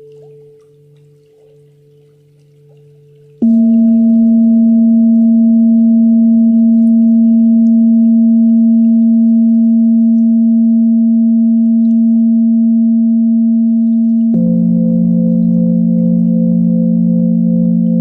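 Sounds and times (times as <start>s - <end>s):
meditation bell ringing: 3.4s - 18.0s.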